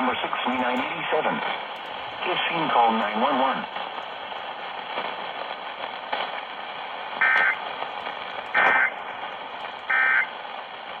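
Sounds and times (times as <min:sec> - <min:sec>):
radio hiss: 0:00.0 - 0:11.0
digital data squawks: 0:07.2 - 0:07.6, 0:08.5 - 0:08.9, 0:09.9 - 0:10.3.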